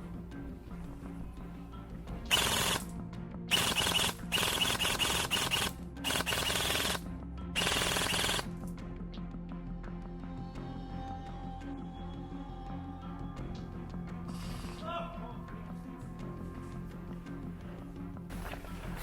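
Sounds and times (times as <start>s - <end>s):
background music: 0.0s - 19.0s
airsoft rifle full-auto fire: 2.3s - 2.9s, 3.5s - 7.0s, 7.6s - 8.5s.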